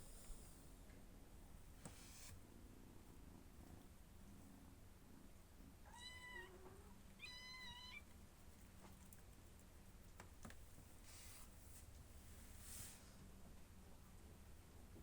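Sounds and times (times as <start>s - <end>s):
cat meowing: 5.9s - 8.0s.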